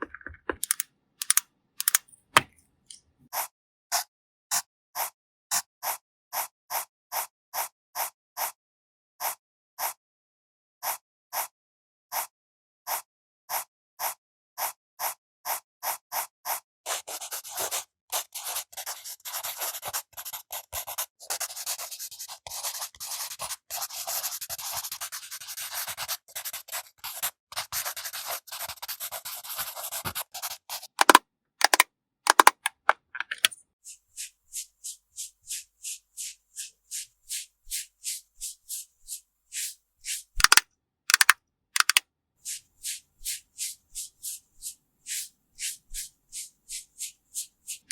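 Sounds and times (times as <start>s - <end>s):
scratchy rubbing: 33.4s - 47.9s
brushing strokes: 33.8s - 40.6s, 41.8s - 47.9s.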